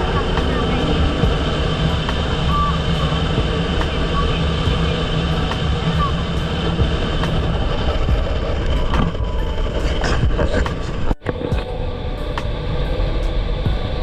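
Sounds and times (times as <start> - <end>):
boat engine droning: 0.0 - 14.0.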